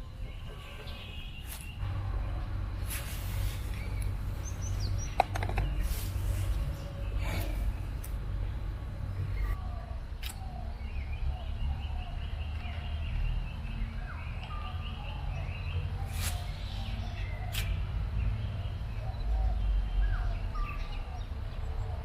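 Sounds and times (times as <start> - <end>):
small birds chirping: 0.0 - 22.0
low rumble: 1.8 - 10.0.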